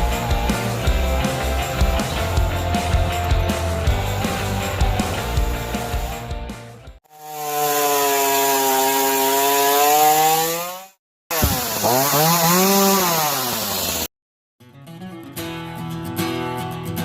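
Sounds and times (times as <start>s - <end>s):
chainsaw revving: 0.0s - 6.2s, 7.0s - 14.1s.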